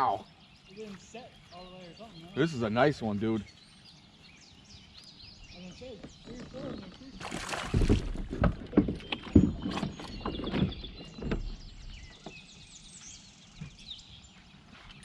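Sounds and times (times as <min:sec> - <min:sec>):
knocks on kayak hull: 0:07.5 - 0:11.6.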